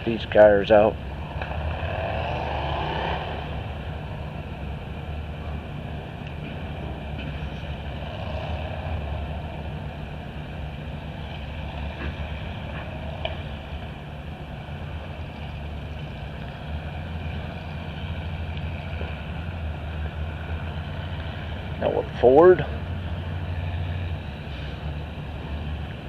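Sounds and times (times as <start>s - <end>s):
low engine rumble: 0.0s - 26.0s.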